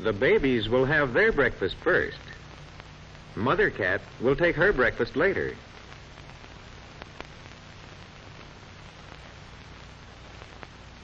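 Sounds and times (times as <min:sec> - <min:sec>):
film soundtrack hiss and hum: 0:00.0 - 0:11.0
faint clicks: 0:05.8 - 0:08.5.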